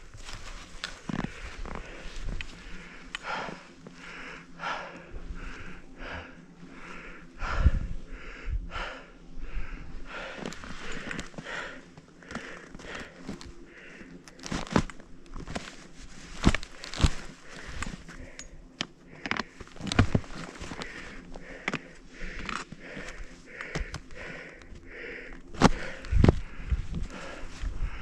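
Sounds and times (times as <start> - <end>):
skis crunching on snow: 0.0 - 4.1
person breathing hard: 0.0 - 28.0.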